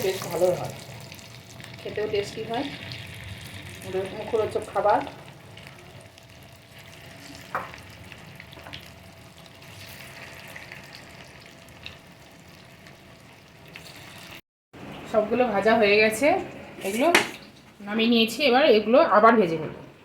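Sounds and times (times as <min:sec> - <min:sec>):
deep-frying sizzle in oil: 0:00.0 - 0:14.4.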